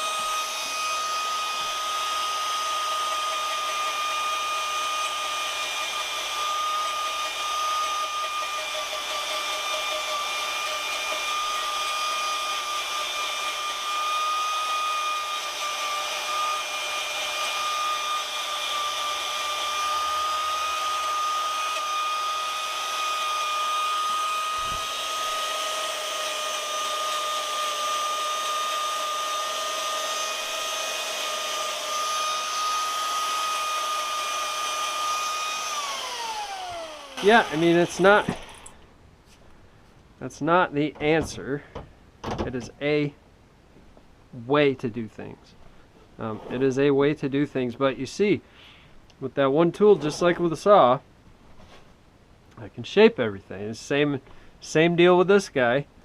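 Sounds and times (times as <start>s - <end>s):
power carving tool whining: 0.0s - 38.8s.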